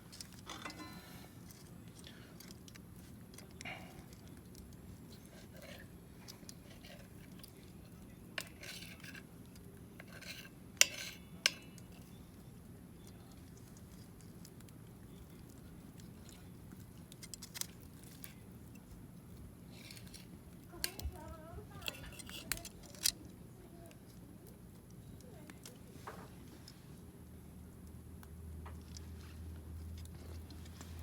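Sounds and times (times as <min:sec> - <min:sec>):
low background noise: 0:00.0 - 0:31.0
cutlery clinking: 0:00.4 - 0:01.3, 0:10.0 - 0:12.2.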